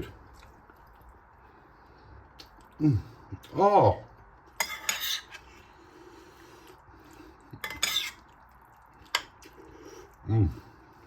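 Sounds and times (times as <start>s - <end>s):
cutlery clinking on a dish: 4.6s - 5.4s, 7.6s - 8.2s.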